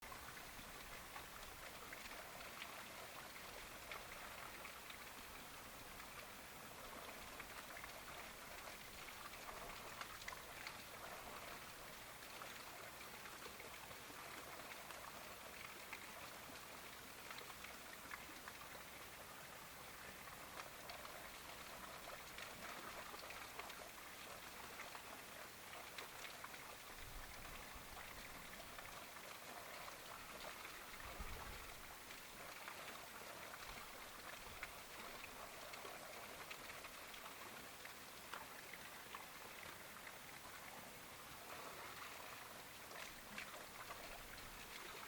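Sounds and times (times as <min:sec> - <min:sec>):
light rain pattering: 0:00.0 - 0:45.0.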